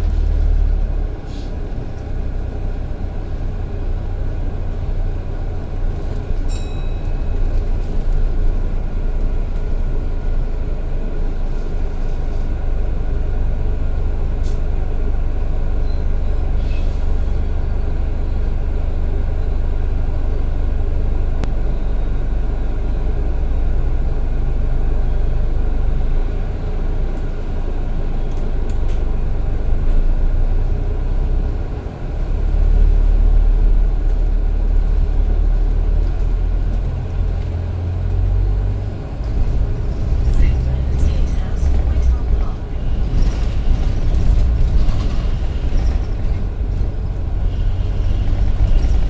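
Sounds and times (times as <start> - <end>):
bus engine and road rumble: 0.0 - 49.0.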